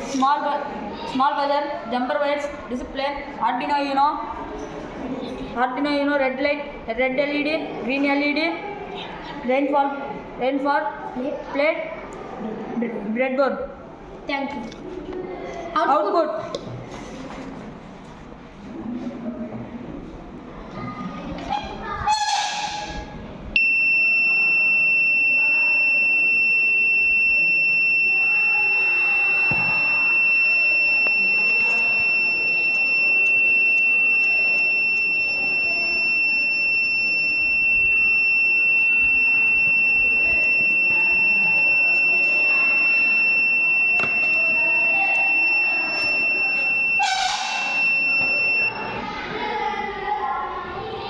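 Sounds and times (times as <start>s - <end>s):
high-pitched buzzer tone: 23.6s - 49.0s.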